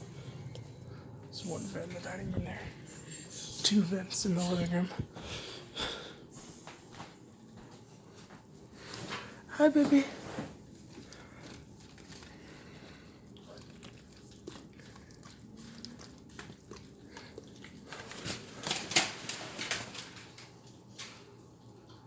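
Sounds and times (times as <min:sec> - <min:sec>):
dog clicks and rustles: 0:13.7 - 0:21.4.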